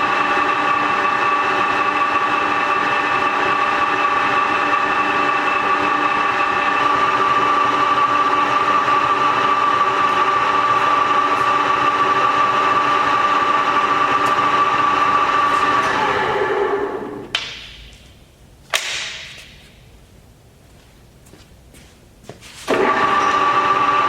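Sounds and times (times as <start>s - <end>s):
lathe whine and drone: 0.0s - 17.4s, 22.7s - 24.0s.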